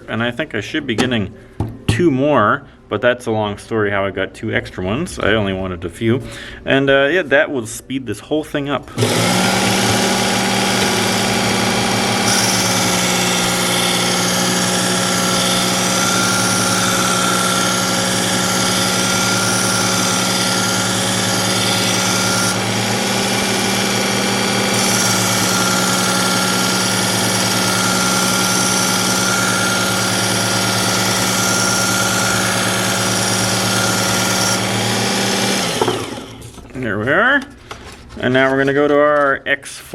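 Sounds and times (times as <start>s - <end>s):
belt sharpener motor hum: 9.0s - 36.6s.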